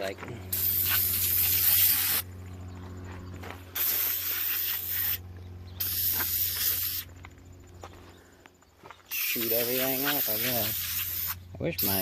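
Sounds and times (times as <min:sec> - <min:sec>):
steady low hum: 0:00.0 - 0:12.0
aerosol can spraying: 0:00.5 - 0:02.2, 0:03.8 - 0:05.2, 0:05.8 - 0:07.1, 0:09.1 - 0:12.0.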